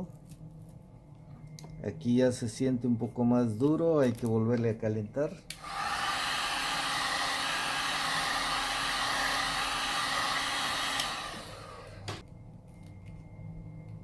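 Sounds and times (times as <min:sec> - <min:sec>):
hot-air blower running: 0:05.5 - 0:12.2.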